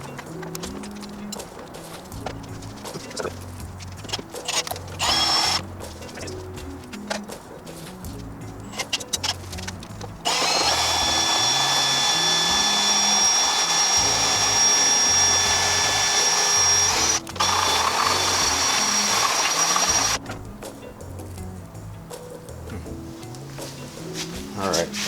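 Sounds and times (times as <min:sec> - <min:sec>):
background music: 0:00.0 - 0:25.0
sanding drum grinding plastic: 0:08.7 - 0:20.2.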